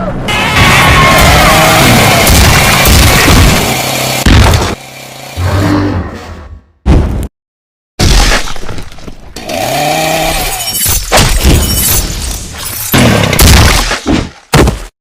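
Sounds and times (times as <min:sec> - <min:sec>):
crashing shattering impacts: 0:00.4 - 0:04.8.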